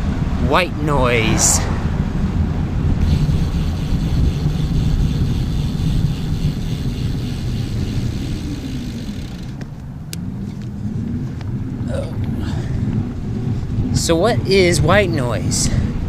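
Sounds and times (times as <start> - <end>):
vehicle engine passing: 0.0 - 12.0
low rumble: 0.0 - 14.0.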